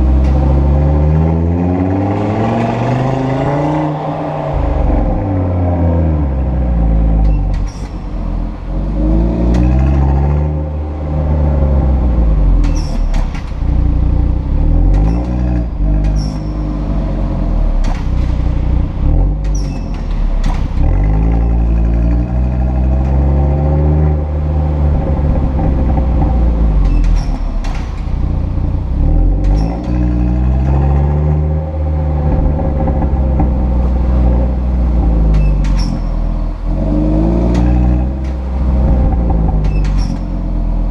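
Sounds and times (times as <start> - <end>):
car engine revving: 0.0 - 40.9
exhaust flaps squeaking: 12.5 - 17.1, 17.7 - 21.2, 24.8 - 31.0, 32.3 - 40.8.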